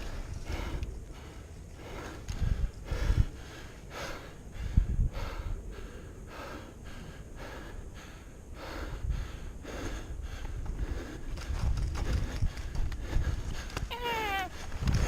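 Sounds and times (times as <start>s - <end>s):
person breathing heavily: 0.0s - 15.0s.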